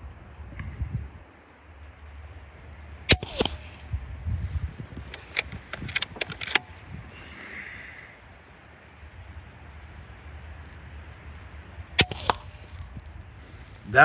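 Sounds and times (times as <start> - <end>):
air rifle shot: 3.1 - 3.8, 5.1 - 6.7, 12.0 - 12.7
rifle action clicking: 5.0 - 6.8.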